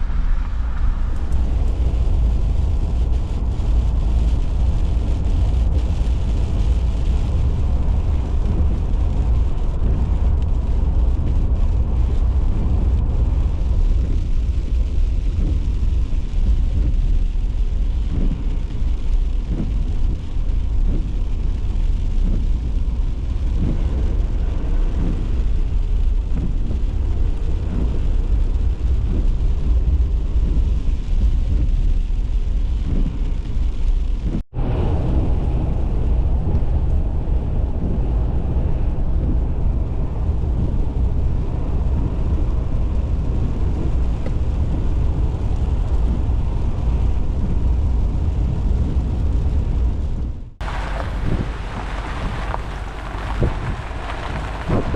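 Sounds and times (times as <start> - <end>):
surges of noise: 0.0 - 14.0, 50.6 - 54.9
vehicle moving low rumble: 0.0 - 54.9.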